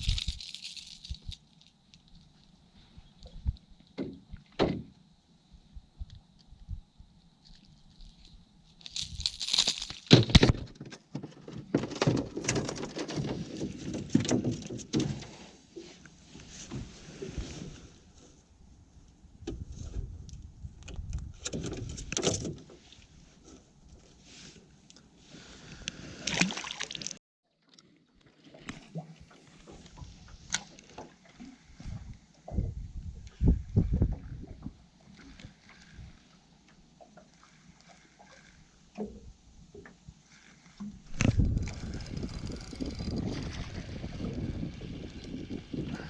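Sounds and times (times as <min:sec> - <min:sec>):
water sloshing against boat: 0:26.1 - 0:46.0.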